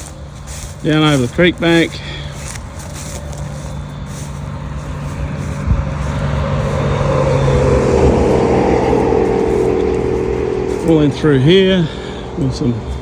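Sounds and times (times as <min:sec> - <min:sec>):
engine running: 0:00.0 - 0:13.0
steady higher note: 0:03.0 - 0:13.0.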